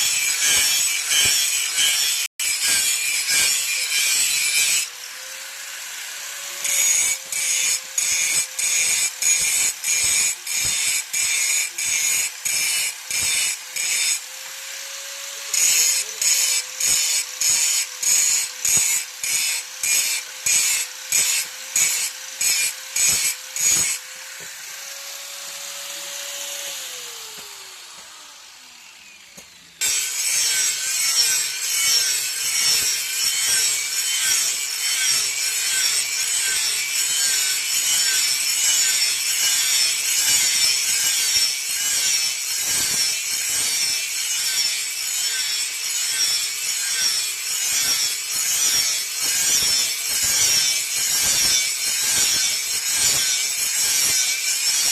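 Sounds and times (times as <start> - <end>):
blade rasping on grinding wheel: 0.0 - 54.9.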